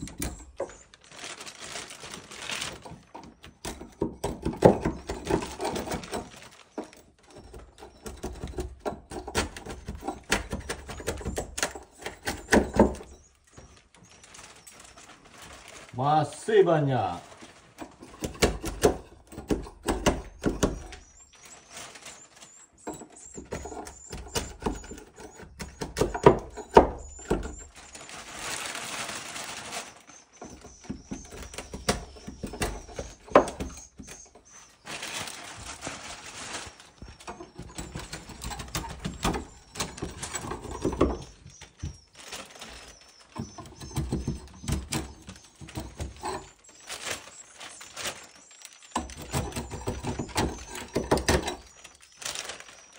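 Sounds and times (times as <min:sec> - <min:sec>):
knocks and clicks on wood: 0:03.2 - 0:13.2, 0:18.0 - 0:21.0, 0:22.9 - 0:27.7, 0:30.5 - 0:34.2, 0:43.4 - 0:46.5.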